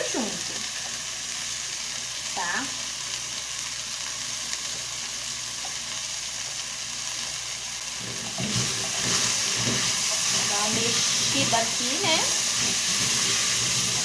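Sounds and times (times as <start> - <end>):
chicken frying in oil: 0.0 - 14.0.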